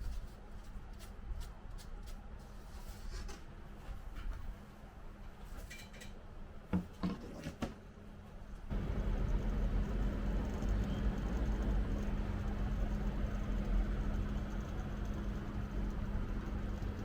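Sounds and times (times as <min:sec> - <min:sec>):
steady low hum: 0:08.0 - 0:17.0.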